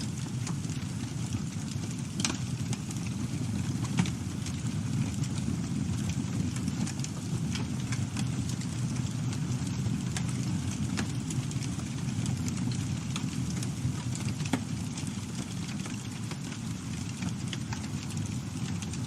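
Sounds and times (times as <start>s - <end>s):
campfire rumble: 0.0s - 19.0s
fire crackles and pops: 0.0s - 19.0s.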